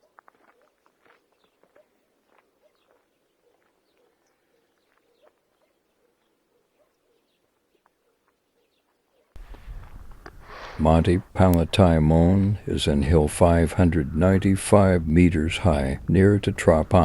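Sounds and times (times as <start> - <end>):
faint bird chirps: 0.6 - 9.5.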